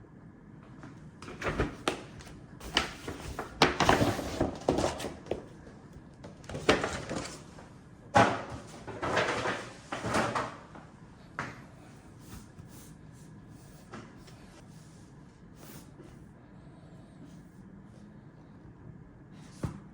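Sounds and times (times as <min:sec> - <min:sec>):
cardboard and paper rustling: 0:01.2 - 0:10.6.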